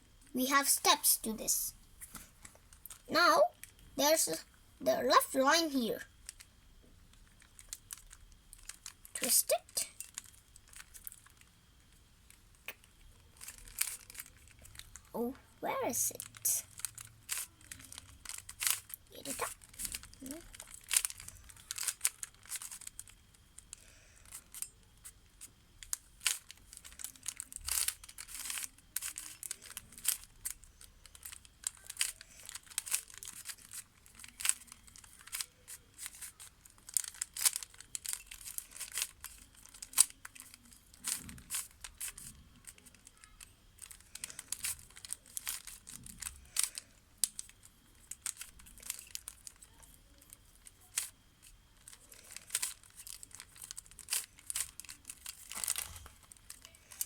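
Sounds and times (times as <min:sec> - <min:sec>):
plastic puzzle cube clicking: 0:25.8 - 0:51.1.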